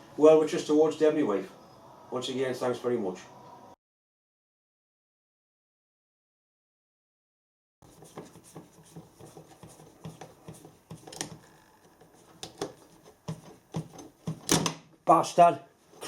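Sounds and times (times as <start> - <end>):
clicks and knocks of handling: 10.0 - 11.4, 12.0 - 14.8.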